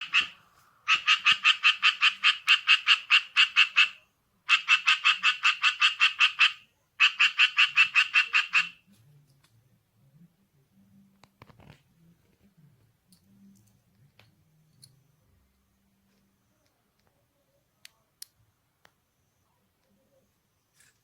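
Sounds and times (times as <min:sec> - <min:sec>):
tree frog calling: 0:00.0 - 0:08.9.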